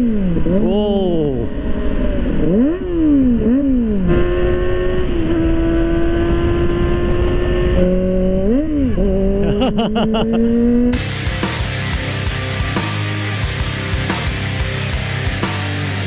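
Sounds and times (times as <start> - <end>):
motorcycle engine revving: 0.0 - 16.0
music: 11.0 - 16.0.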